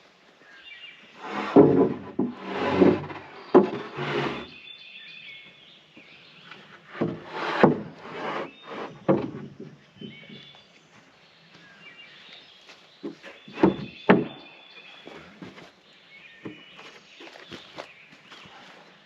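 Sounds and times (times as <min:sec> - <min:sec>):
wood scraping against wood: 0:01.1 - 0:04.6, 0:06.4 - 0:10.7, 0:13.0 - 0:15.8
sharp wooden knocks: 0:01.2 - 0:04.4, 0:06.9 - 0:10.5, 0:13.0 - 0:14.4.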